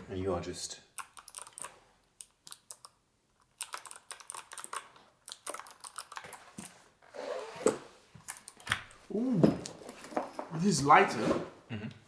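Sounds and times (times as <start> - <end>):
mechanical keyboard typing: 1.0 - 1.7, 3.6 - 6.4.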